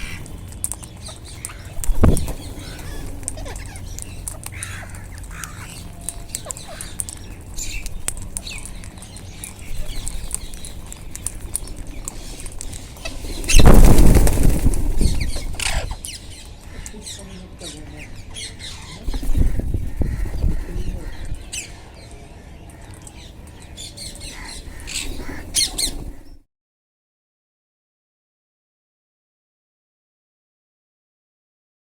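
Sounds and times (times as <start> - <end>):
parakeets squawking: 0.0 - 22.0, 22.8 - 26.4
loud rush of flapping wings: 1.8 - 3.3, 11.2 - 15.9, 19.1 - 20.8.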